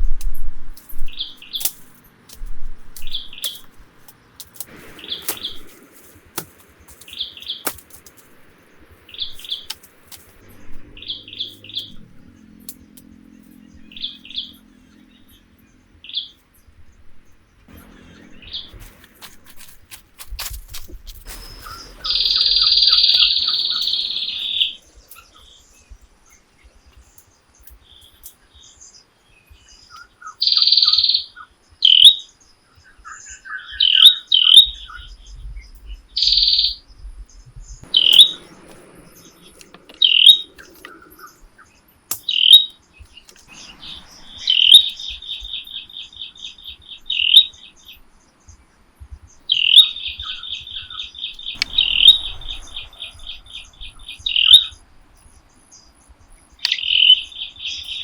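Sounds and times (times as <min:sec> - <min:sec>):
bird chirping: 0:00.8 - 0:02.0, 0:03.0 - 0:19.9, 0:21.2 - 0:58.0
bird trilling: 0:04.7 - 0:05.9, 0:09.1 - 0:09.9, 0:21.3 - 0:25.4, 0:37.8 - 0:42.8, 0:43.5 - 0:47.7, 0:49.5 - 0:54.8, 0:56.6 - 0:58.0.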